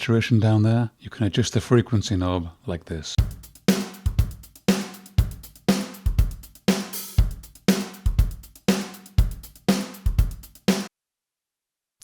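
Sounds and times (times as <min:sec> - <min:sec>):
boomy kick drum hits: 0:03.2 - 0:10.5
saturated drum loop: 0:03.2 - 0:10.9.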